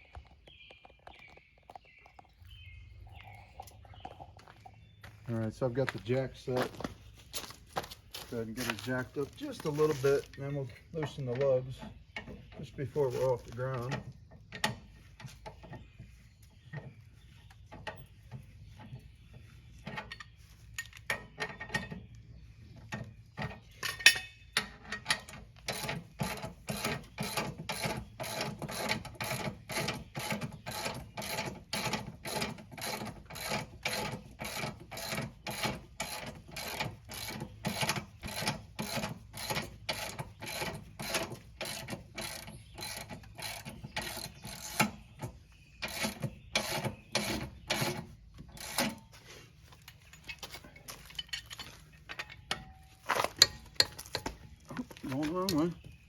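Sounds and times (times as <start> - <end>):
car jack pumping strokes: 8.4 - 55.8.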